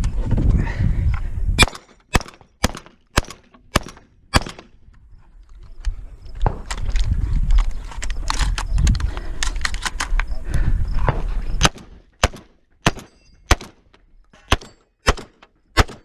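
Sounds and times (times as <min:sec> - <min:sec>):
gunshots: 0:01.6 - 0:04.7, 0:11.6 - 0:13.8, 0:14.5 - 0:16.0.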